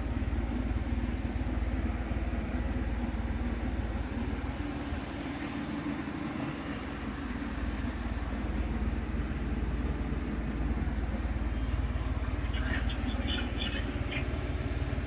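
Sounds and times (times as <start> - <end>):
air conditioner humming: 0.0 - 15.0.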